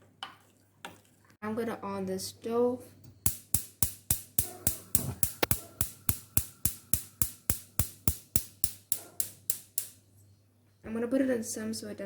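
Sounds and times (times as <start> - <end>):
gas stove igniter clicking: 3.1 - 10.0.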